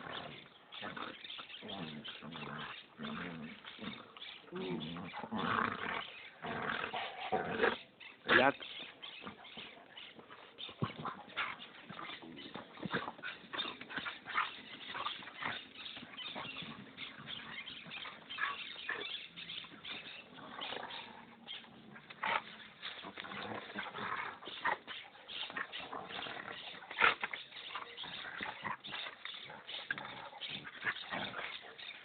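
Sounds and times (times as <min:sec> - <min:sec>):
dogs growling and yipping: 0:00.0 - 0:32.0.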